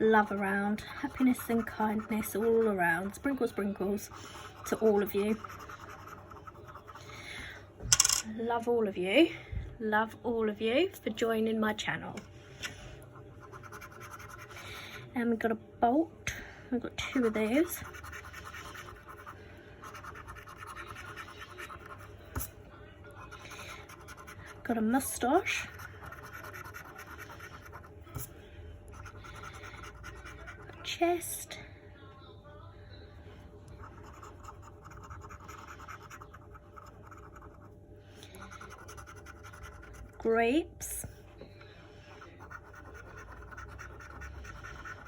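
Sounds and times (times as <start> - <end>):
scratchcard being scratched: 0.1 - 3.2, 4.0 - 7.0, 13.4 - 14.5, 17.2 - 19.3, 19.9 - 22.1, 25.6 - 28.0, 33.8 - 37.7, 38.6 - 40.2, 42.4 - 45.0.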